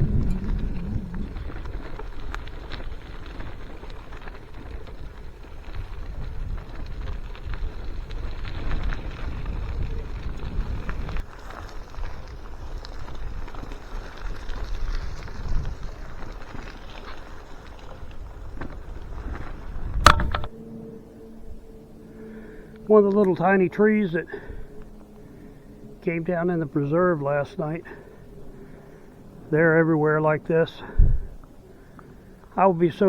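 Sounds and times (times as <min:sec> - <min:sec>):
wind buffeting microphone: 0:00.0 - 0:20.5, 0:30.8 - 0:31.6
bicycle tyres rolling on wet trail: 0:00.0 - 0:33.0.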